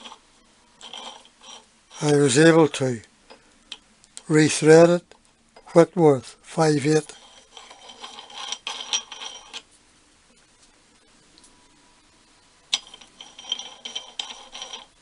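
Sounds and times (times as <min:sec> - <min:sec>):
metal wing nut clinking: 0:07.1 - 0:09.6, 0:12.7 - 0:15.0.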